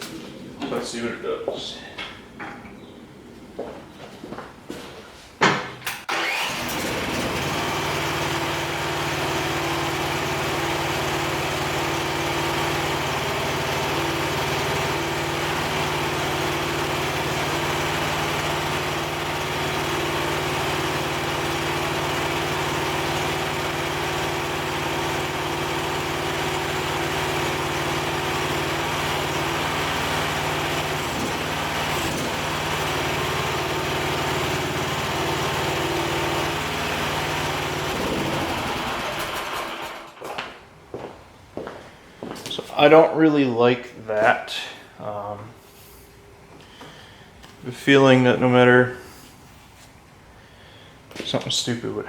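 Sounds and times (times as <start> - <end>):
small gas engine running: 6.0 - 40.2.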